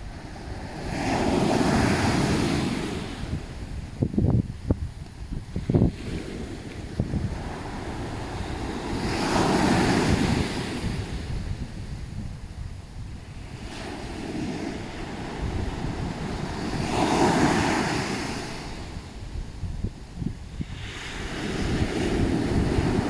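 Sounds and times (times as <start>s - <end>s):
ocean waves breaking on beach: 0.0s - 4.6s, 5.3s - 23.0s.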